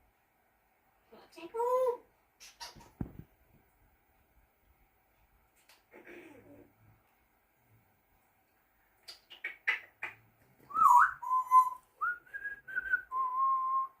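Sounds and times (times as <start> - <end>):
parrot clicking calls: 9.0 - 10.2
parrot whistling: 10.7 - 13.9.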